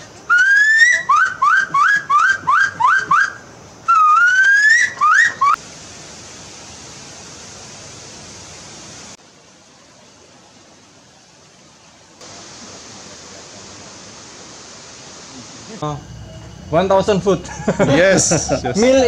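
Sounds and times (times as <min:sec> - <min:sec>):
bird whistling loudly: 0:00.3 - 0:05.6
steady rushing hiss: 0:02.7 - 0:19.0.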